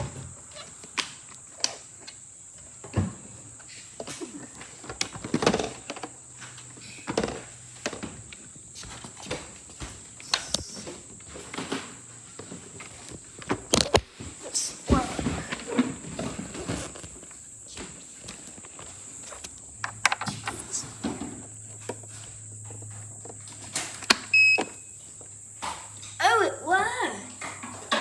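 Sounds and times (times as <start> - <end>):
knocks and clicks of handling: 15.6 - 24.8.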